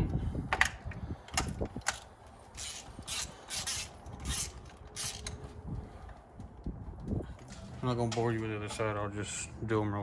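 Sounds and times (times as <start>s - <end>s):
hand tools scraping engine parts: 1.9s - 5.4s.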